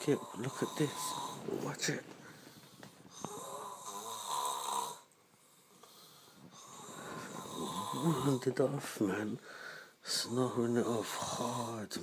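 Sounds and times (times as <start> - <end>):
person snoring loudly: 3.1 - 5.1, 6.6 - 8.6, 10.5 - 11.8.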